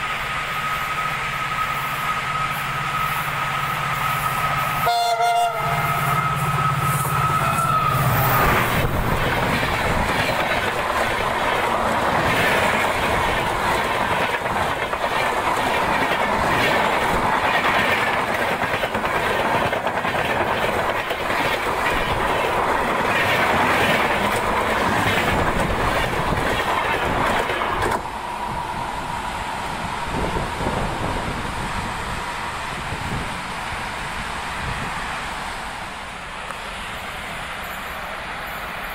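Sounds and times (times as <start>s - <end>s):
train wheels rushing on rails: 0.0s - 38.9s
train horn: 4.2s - 8.5s
clickety-clack over rail joints: 7.0s - 28.2s.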